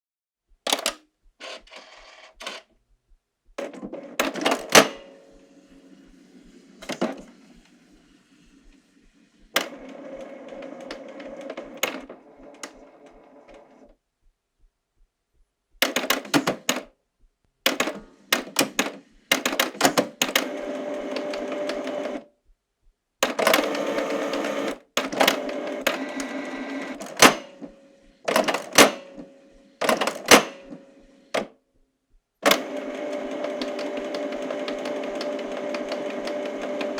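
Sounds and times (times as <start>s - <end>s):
printer clicks and clacks: 3.6s - 5.0s, 9.6s - 13.8s, 15.8s - 16.9s, 17.7s - 22.2s, 23.2s - 31.5s, 32.4s - 36.9s
inkjet printer motors whirring: 18.2s - 22.2s, 23.2s - 31.4s, 32.4s - 36.9s.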